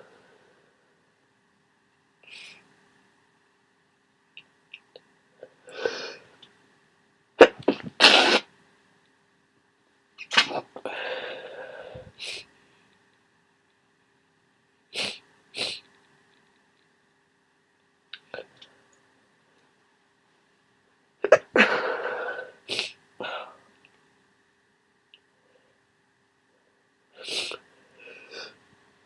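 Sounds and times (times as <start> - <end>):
person sneezing: 7.4 - 8.5, 10.3 - 10.7, 21.2 - 23.0
breathy sounds: 10.8 - 12.5, 21.5 - 23.7.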